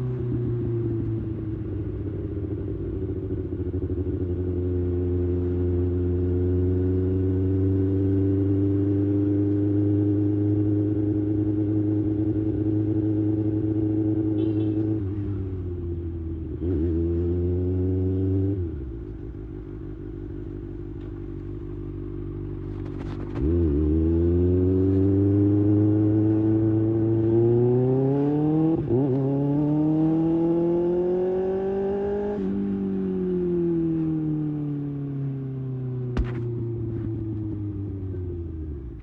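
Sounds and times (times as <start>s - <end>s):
motorcycle engine running: 0.0s - 25.9s, 35.8s - 39.0s.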